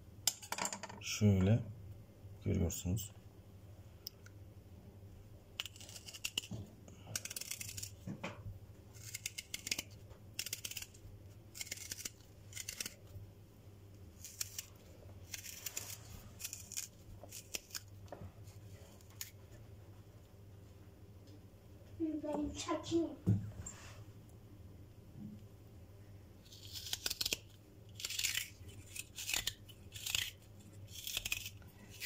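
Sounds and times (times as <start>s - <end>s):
tool scraping radish: 5.6s - 8.1s, 8.9s - 13.1s, 14.2s - 17.9s, 26.4s - 32.0s.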